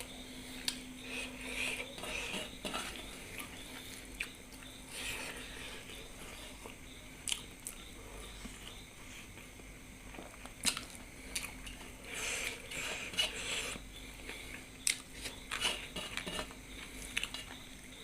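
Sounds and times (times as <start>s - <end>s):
chewing: 2.9s - 8.8s, 10.1s - 17.6s.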